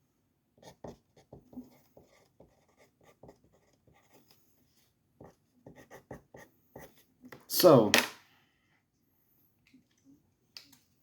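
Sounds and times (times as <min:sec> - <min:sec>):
pen scratching while writing: 0:00.6 - 0:04.4, 0:05.2 - 0:07.1.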